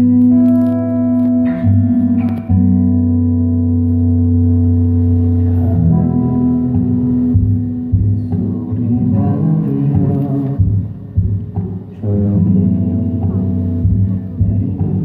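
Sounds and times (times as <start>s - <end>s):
guitar chords and plucked notes: 0.0s - 15.0s.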